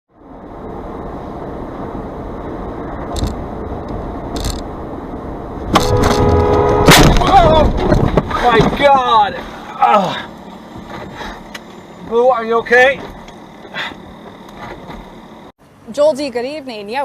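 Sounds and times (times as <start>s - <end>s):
car road noise: 0.1s - 16.8s
car horn blaring: 5.7s - 7.8s
loud crash impact: 5.7s - 8.1s.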